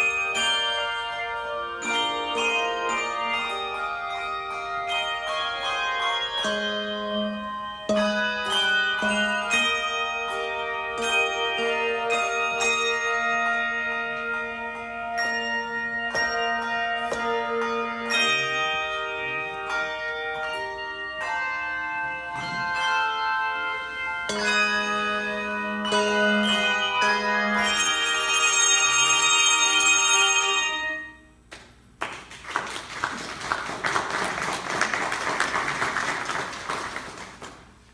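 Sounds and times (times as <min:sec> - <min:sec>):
handbell choir playing: 0:00.0 - 0:31.4
audience applause: 0:32.0 - 0:37.8.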